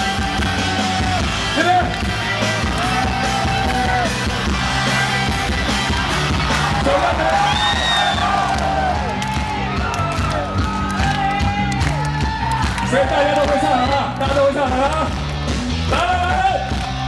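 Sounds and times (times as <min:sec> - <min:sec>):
live rock band playing: 0:00.0 - 0:07.0.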